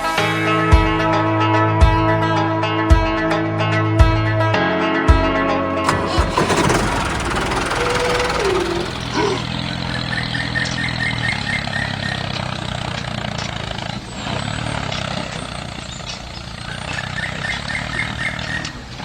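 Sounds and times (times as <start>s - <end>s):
tractor engine humming: 5.8s - 17.9s.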